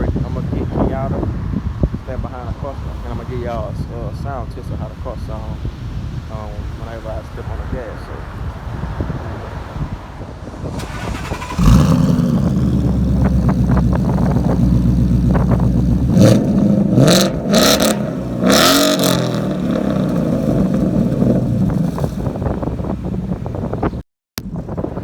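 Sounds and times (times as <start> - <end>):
car engine starting and idling: 10.7 - 24.0
car engine revving: 10.8 - 24.0.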